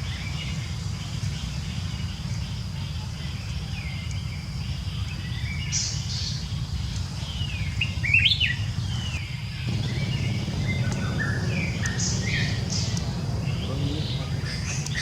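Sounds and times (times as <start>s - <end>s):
steady low rumble: 9.6s - 15.0s.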